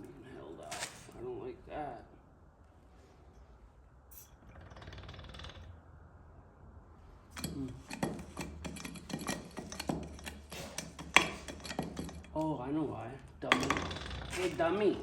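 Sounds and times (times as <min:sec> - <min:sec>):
metal parts clinking: 0:07.4 - 0:12.4.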